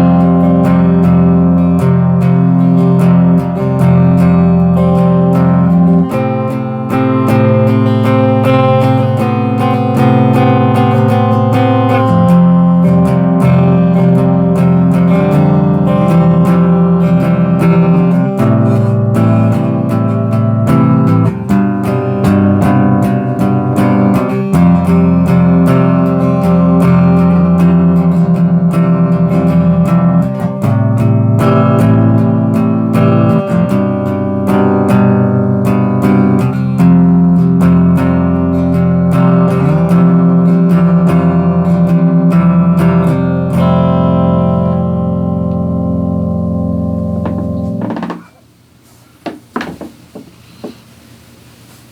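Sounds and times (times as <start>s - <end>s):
electric guitar riff: 0.0s - 48.4s.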